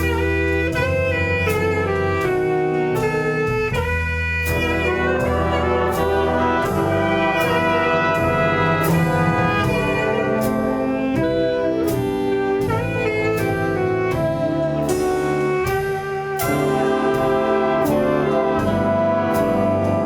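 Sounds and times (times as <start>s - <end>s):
brass and saxophone ensemble: 0.0s - 20.0s
percussion beat: 0.0s - 20.0s.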